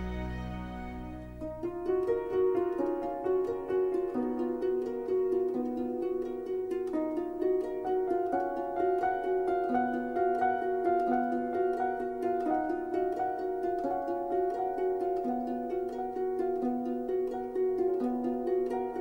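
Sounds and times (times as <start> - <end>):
plucked notes over held tones: 0.0 - 19.0.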